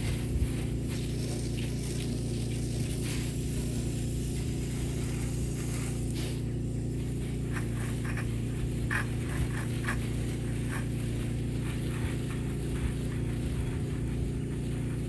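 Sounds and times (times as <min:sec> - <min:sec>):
low engine-like hum: 0:00.0 - 0:15.0.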